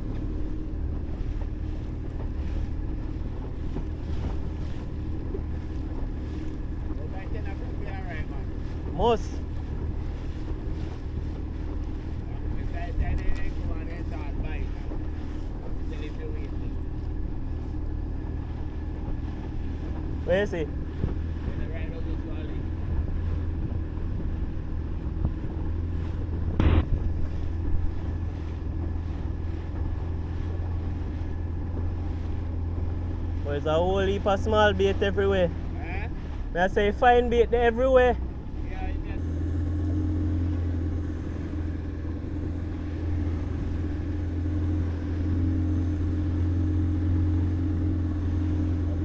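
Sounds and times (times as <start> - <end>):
boat motor running: 0.0 - 49.0
wind buffeting microphone: 0.0 - 49.0
loud rush of noise: 26.6 - 27.0.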